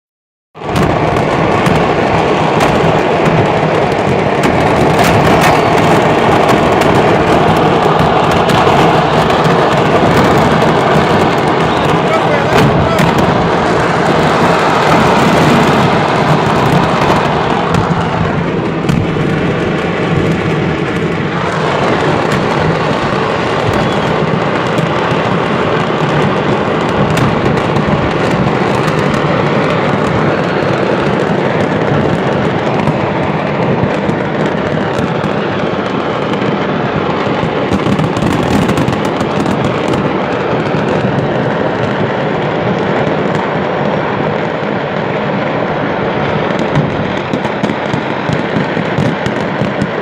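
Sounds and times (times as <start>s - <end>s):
fireworks crackling and popping: 0.6s - 50.0s.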